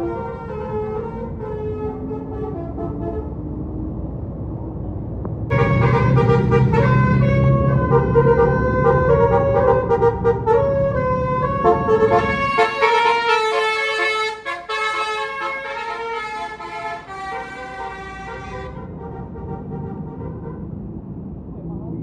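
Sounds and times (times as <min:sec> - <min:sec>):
bus engine rumble: 0:00.0 - 0:22.0
multi-note air horn tune: 0:05.5 - 0:20.6.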